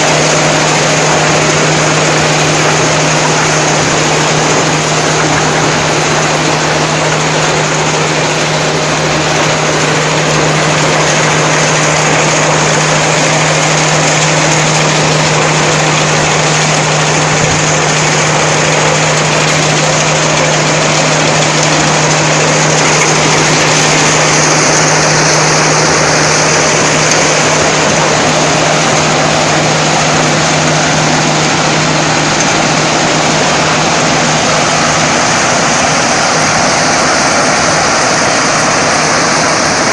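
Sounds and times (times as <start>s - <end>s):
low engine drone: 0.0s - 39.9s.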